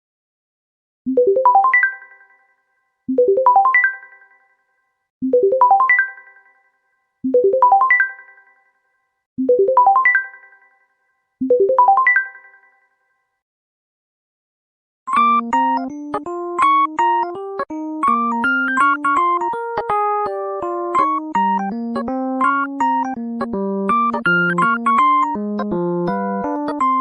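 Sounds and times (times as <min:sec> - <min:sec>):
phone ringtone rising notes: 0:15.1 - 0:27.0.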